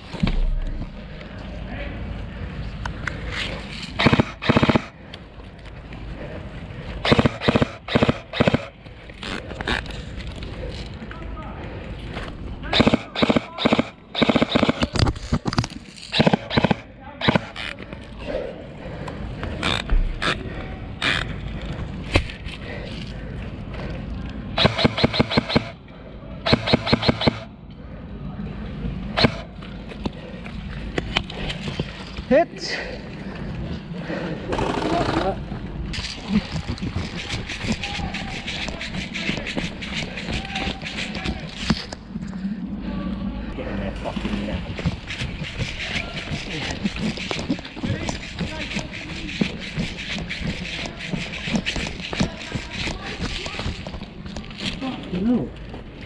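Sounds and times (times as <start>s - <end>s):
airsoft gun full-auto bursts: 4.0s - 5.0s, 7.0s - 9.8s, 12.7s - 15.0s, 16.1s - 17.7s, 24.6s - 25.8s, 26.4s - 27.5s, 29.2s - 29.5s.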